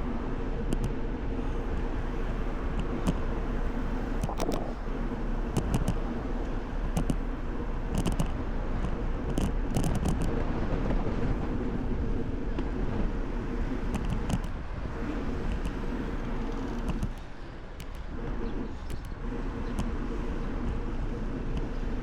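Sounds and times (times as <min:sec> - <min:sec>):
tyre on road noise: 0:00.0 - 0:22.0
bicycle clicks and rattles: 0:05.4 - 0:10.4, 0:13.9 - 0:14.6, 0:15.4 - 0:19.9.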